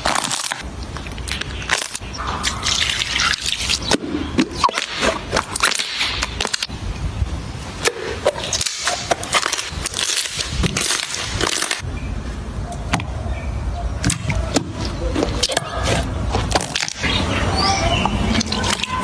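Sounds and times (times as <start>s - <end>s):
slime squelching by hand: 0.0s - 6.7s.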